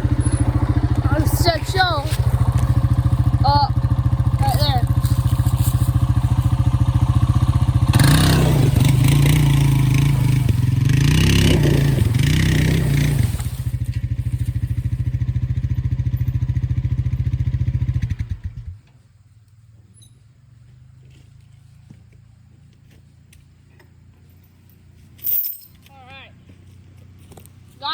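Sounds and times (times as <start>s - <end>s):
atv engine revving under load: 0.0s - 18.8s.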